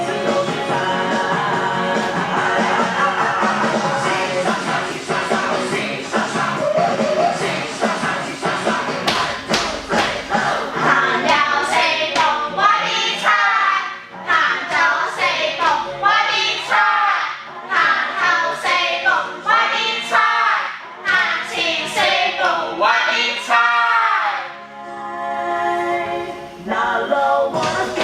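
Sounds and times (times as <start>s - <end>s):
backing music with a beat: 0.0s - 12.6s, 26.2s - 28.0s
voices singing a pop song: 0.0s - 28.0s.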